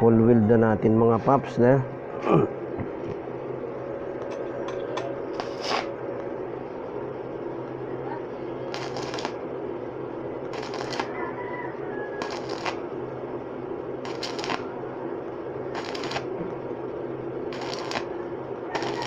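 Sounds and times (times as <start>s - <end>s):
welding arc crackling and sizzling: 5.3s - 5.9s, 8.6s - 9.4s, 10.4s - 11.2s, 12.2s - 12.8s, 14.0s - 14.7s, 15.6s - 16.6s, 17.4s - 19.0s.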